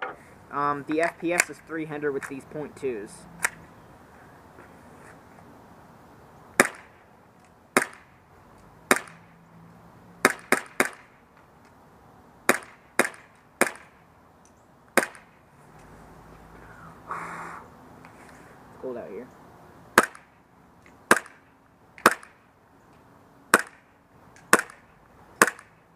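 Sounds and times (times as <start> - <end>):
airsoft pistol shots: 6.6 - 7.0, 7.8 - 8.2, 8.9 - 9.2, 10.2 - 11.2, 12.5 - 14.0, 15.0 - 15.3, 20.0 - 20.3, 21.1 - 21.4, 22.0 - 22.4, 23.5 - 23.9, 24.5 - 24.8, 25.4 - 25.7.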